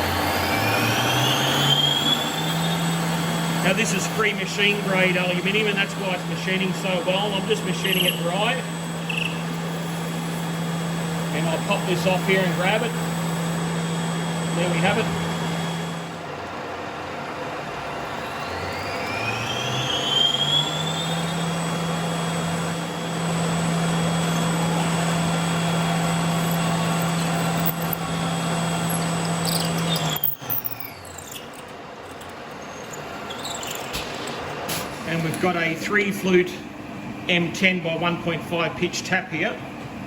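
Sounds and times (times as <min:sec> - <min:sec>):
lathe motor whining: 0:00.0 - 0:40.0
handling clatter: 0:26.3 - 0:28.2, 0:28.8 - 0:35.5.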